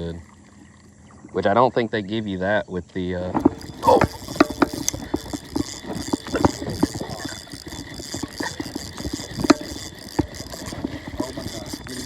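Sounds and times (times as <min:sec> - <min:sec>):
sharp clicks and knocks: 0:03.3 - 0:12.0.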